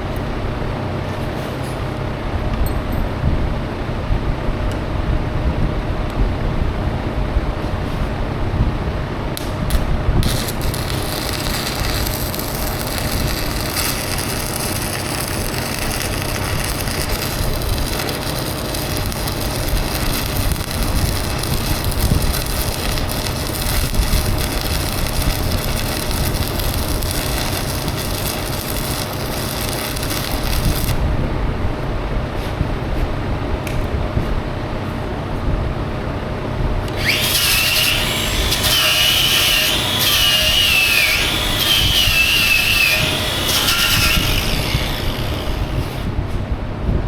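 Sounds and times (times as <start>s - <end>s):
large fan rushing: 0.0s - 47.0s
welding arc crackle and sizzle: 9.4s - 31.1s, 36.9s - 46.2s.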